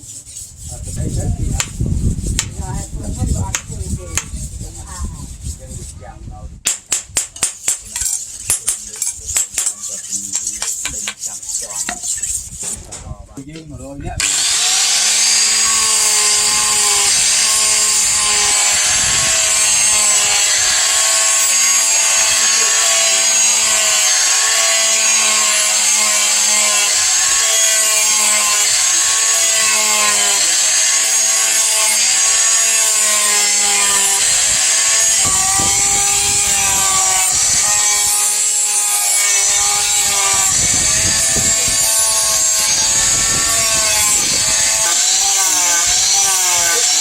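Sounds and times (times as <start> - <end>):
grinder motor whine: 14.2 - 47.0
grinding hiss: 14.2 - 47.0.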